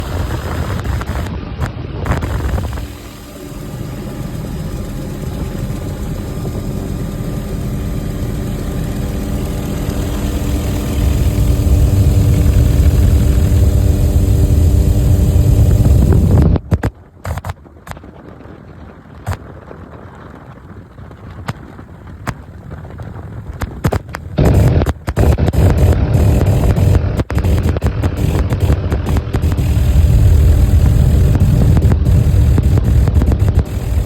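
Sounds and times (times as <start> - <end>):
low rumble: 0.0 - 16.6, 24.4 - 34.0
helicopter engine and rotor drone: 0.0 - 17.4, 23.8 - 34.0.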